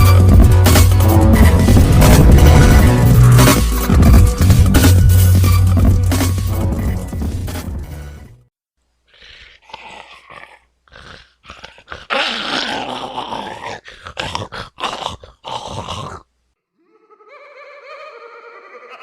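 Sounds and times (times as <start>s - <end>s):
beast growling and snarling: 0.0s - 4.8s, 9.2s - 16.3s.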